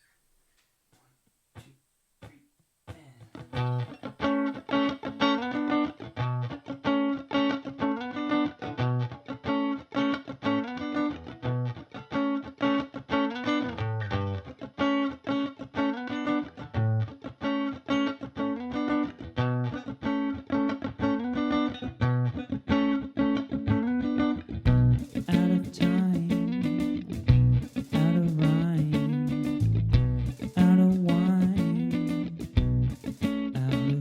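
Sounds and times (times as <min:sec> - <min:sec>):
picked guitar figure: 0:01.6 - 0:34.0
low bass notes: 0:24.6 - 0:34.0.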